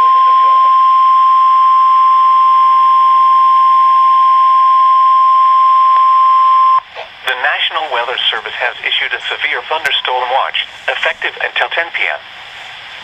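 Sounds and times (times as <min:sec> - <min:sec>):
loud steady alarm tone: 0:00.0 - 0:06.9
faint radio hiss: 0:06.8 - 0:13.0.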